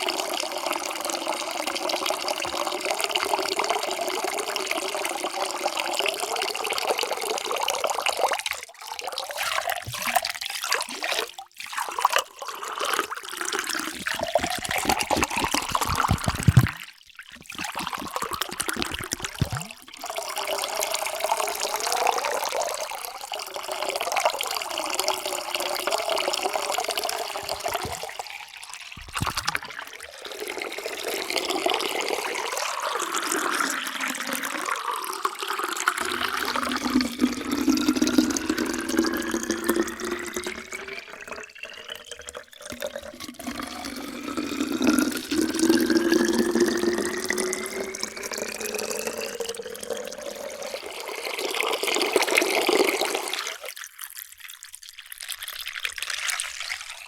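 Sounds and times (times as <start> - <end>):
water pouring into container: 0.0 - 57.0.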